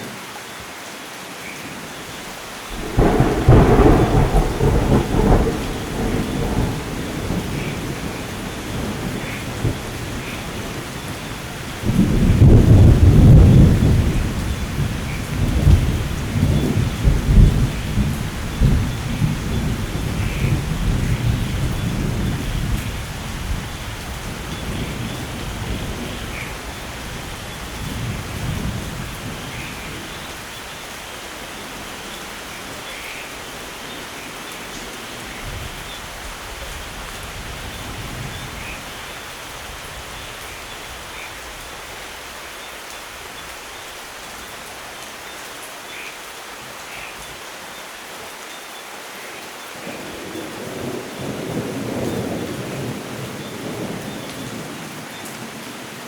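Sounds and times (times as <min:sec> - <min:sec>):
steady rain: 0:00.0 - 0:56.0
rumble of thunder: 0:02.7 - 0:30.4, 0:49.9 - 0:54.9.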